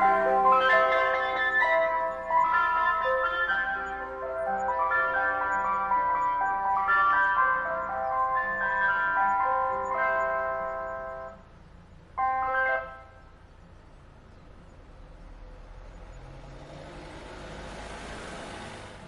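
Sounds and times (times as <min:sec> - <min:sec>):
ice cream van chime tune: 0:00.0 - 0:14.9.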